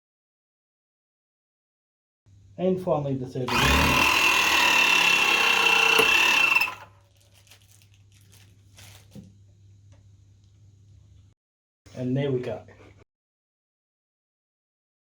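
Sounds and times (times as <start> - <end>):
hydraulic pump whine: 3.5 - 6.9.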